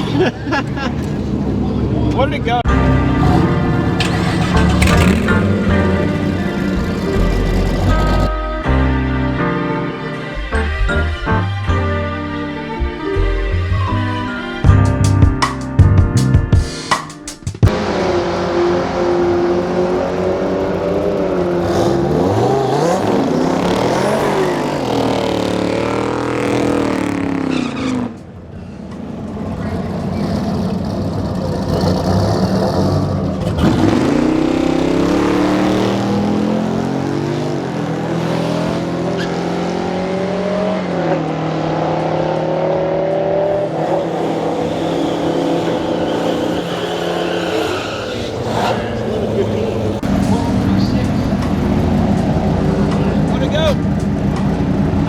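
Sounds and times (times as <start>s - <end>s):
racing car engine revving: 2.7s - 8.4s, 17.7s - 55.0s.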